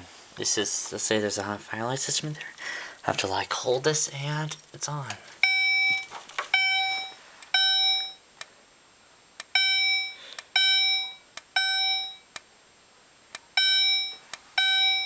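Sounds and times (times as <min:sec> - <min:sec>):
fire alarm chimes: 0:05.4 - 0:08.2, 0:09.5 - 0:12.3, 0:13.6 - 0:15.0.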